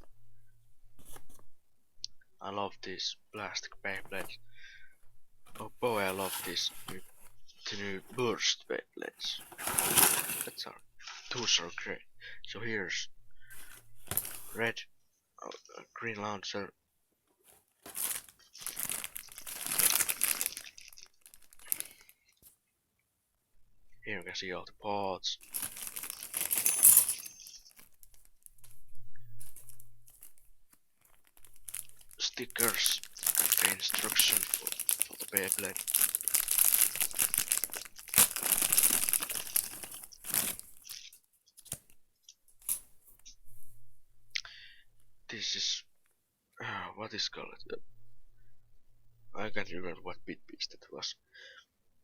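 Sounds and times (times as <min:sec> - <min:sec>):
packaging crinkling and rustling: 0:05.4 - 0:08.4, 0:09.2 - 0:10.7, 0:13.6 - 0:14.6, 0:17.4 - 0:22.5, 0:25.4 - 0:43.2.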